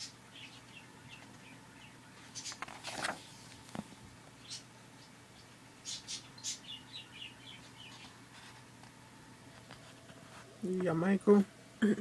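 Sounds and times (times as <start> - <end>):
small bird chirping: 0.0 - 2.6, 4.4 - 8.2.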